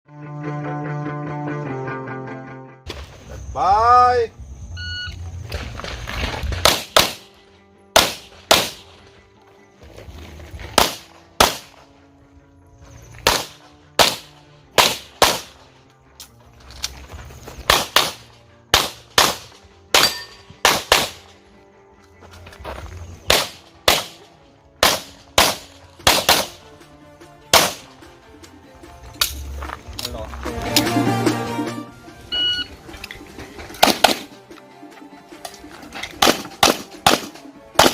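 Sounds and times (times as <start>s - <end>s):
handgun shots: 6.6s - 7.3s, 8.0s - 8.9s, 10.8s - 11.8s, 13.2s - 15.6s, 17.6s - 21.3s, 23.3s - 26.6s, 27.5s - 27.9s, 33.8s - 34.3s, 36.1s - 37.9s.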